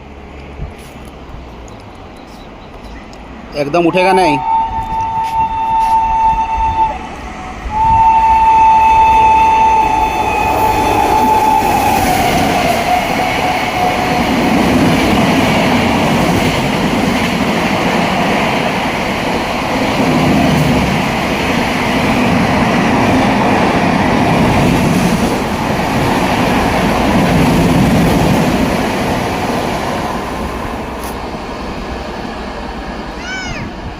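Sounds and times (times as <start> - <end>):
train wheels rumbling on rails: 0.0 - 33.9
locomotive horn: 4.0 - 14.3.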